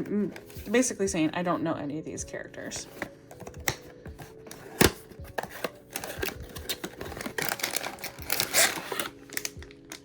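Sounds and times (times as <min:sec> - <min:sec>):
packaging crinkling and rustling: 0:02.8 - 0:10.0.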